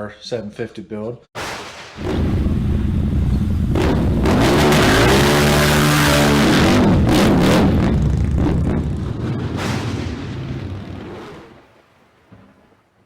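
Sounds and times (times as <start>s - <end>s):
motorcycle engine revving: 2.0s - 9.6s.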